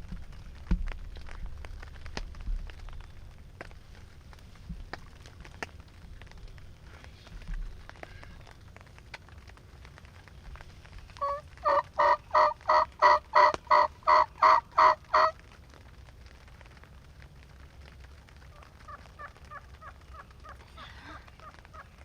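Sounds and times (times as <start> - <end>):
short turkey calls: 11.2 - 15.4
wild turkey yelping: 11.2 - 15.4.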